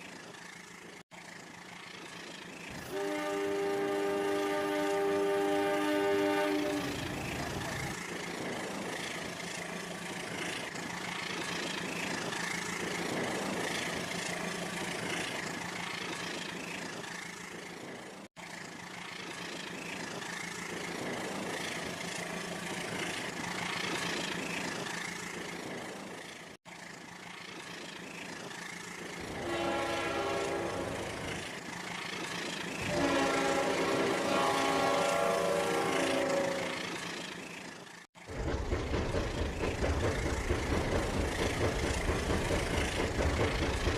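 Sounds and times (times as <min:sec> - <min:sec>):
toy train running on track: 0:00.0 - 0:43.9
toy train horn sound effect: 0:02.8 - 0:07.3, 0:29.3 - 0:31.2, 0:32.8 - 0:37.0.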